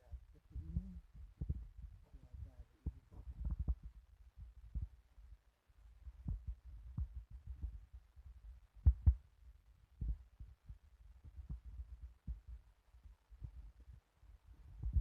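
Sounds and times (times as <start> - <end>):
wind buffeting microphone: 0.0 - 5.0, 14.5 - 15.0.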